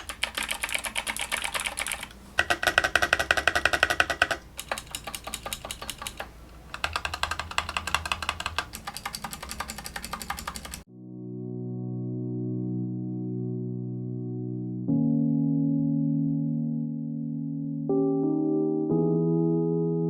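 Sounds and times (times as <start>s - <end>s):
mechanical keyboard typing: 0.0s - 10.9s
calm sustained music: 10.9s - 20.0s.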